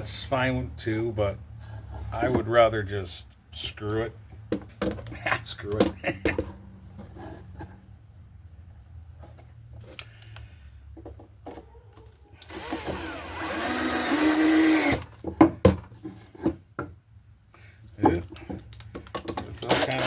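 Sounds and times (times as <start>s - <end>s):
power drill driving screw into wood: 12.4s - 15.1s, 19.7s - 20.0s.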